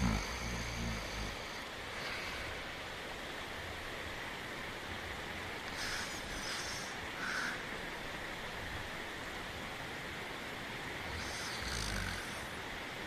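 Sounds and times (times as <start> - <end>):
person snoring: 0.0 - 1.6, 11.1 - 12.5
rain hissing: 0.0 - 13.0.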